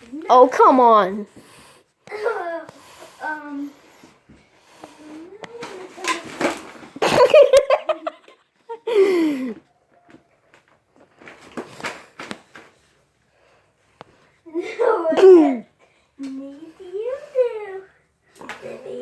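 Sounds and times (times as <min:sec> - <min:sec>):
laughter: 0:07.0 - 0:09.6.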